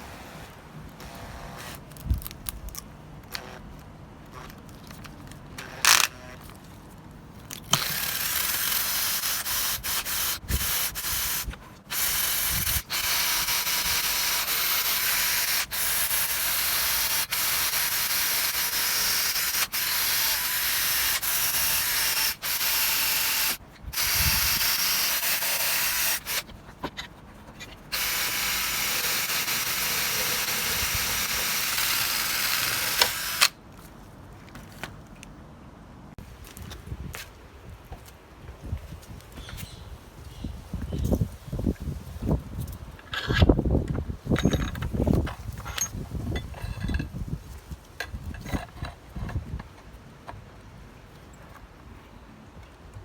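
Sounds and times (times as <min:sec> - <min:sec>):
power tool grinding metal: 0:07.8 - 0:26.5, 0:27.9 - 0:33.6.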